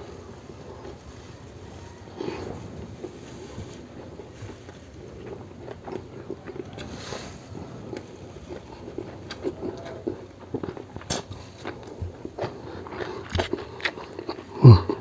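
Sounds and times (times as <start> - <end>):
breathy hiss: 0.0 - 5.2
person chewing food: 0.0 - 15.0
mouth clicks and smacks: 7.9 - 15.0.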